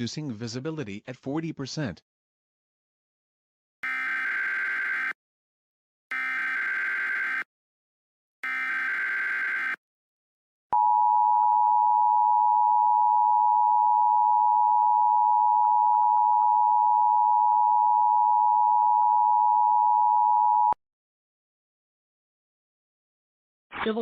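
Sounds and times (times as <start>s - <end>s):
two-tone alarm tone: 3.8s - 5.2s, 6.1s - 7.5s, 8.4s - 9.8s, 10.8s - 20.8s.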